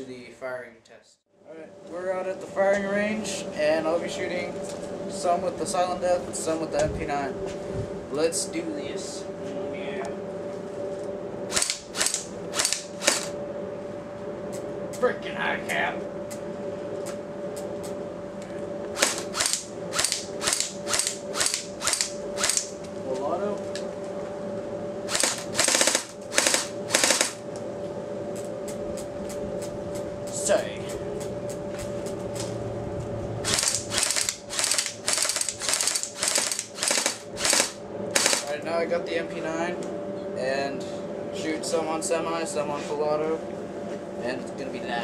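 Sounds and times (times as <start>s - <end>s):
electric airsoft rifle bursts: 11.5s - 13.3s, 19.0s - 22.7s, 25.1s - 27.4s, 33.5s - 38.5s.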